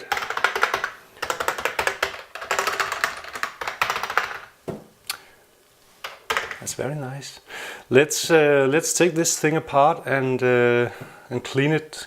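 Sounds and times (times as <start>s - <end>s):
fast keyboard typing: 0.0s - 4.6s.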